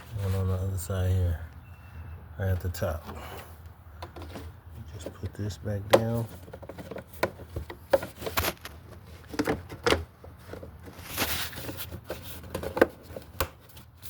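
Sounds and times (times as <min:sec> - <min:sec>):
scraping rustle: 0:06.1 - 0:14.0.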